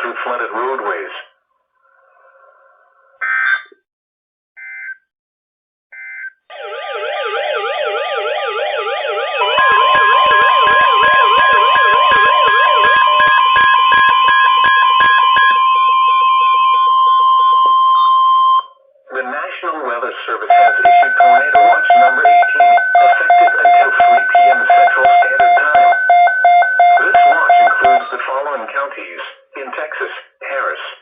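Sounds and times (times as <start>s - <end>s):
warbling siren-like alarm: 6.5s - 18.8s
steady alert tone: 8.8s - 18.8s, 20.5s - 28.0s
digital data bursts: 9.4s - 17.6s, 20.5s - 28.1s.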